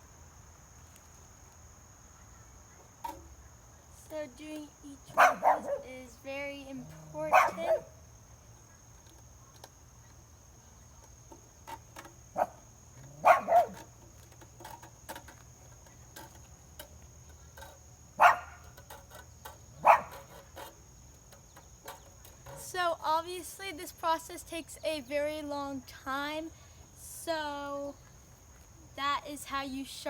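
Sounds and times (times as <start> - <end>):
dog barking: 5.2 - 5.9, 7.3 - 7.9, 13.2 - 13.8, 18.2 - 18.6, 19.8 - 20.2.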